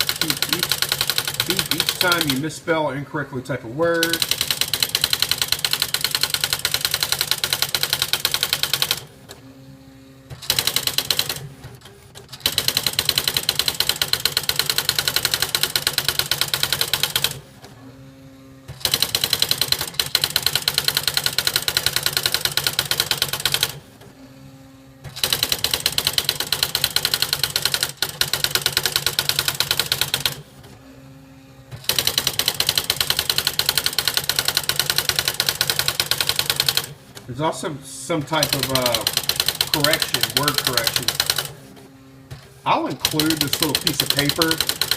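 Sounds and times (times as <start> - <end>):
electronic typewriter striking characters: 0.0 - 2.6, 3.9 - 9.1, 10.4 - 11.4, 12.3 - 17.4, 18.8 - 23.8, 25.2 - 30.4, 31.8 - 37.0, 38.2 - 41.6, 42.7 - 44.9.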